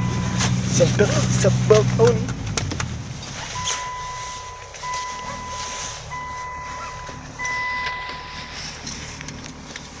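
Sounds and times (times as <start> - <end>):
electronic warning beeps: 3.6 - 8.6.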